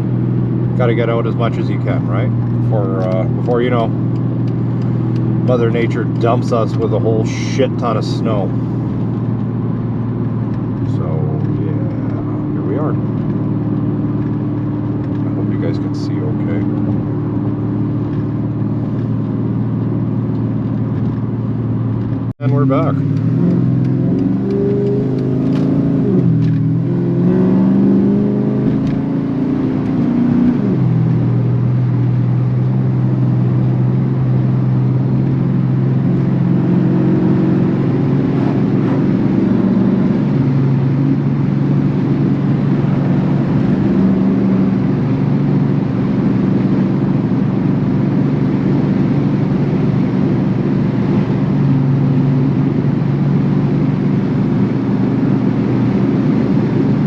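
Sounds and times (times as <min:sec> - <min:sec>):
car engine accelerating: 0:00.0 - 0:57.0.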